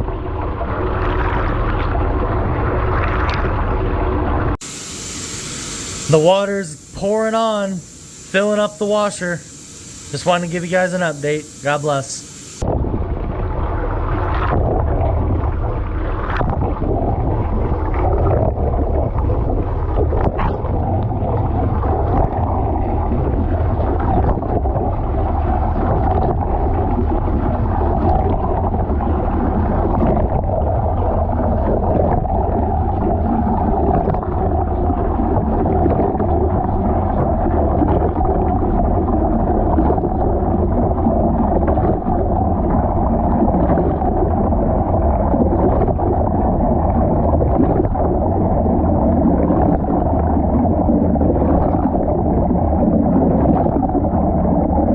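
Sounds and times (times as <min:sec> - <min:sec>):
washing machine filling with water: 0:00.0 - 0:54.9.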